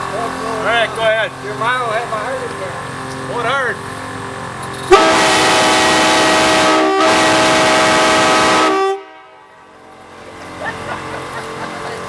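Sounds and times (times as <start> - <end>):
train air horns chord: 4.9 - 10.4.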